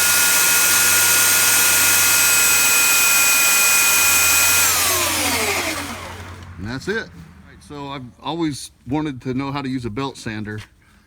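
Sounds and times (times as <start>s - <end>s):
belt sander whining: 0.0s - 7.1s.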